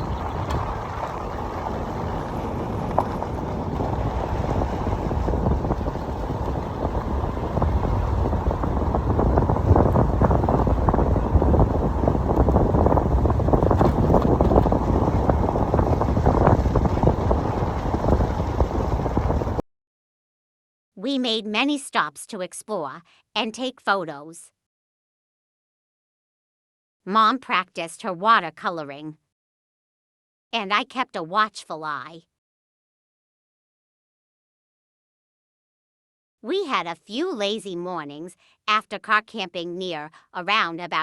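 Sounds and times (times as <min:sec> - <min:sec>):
wind buffeting microphone: 0:00.0 - 0:19.6.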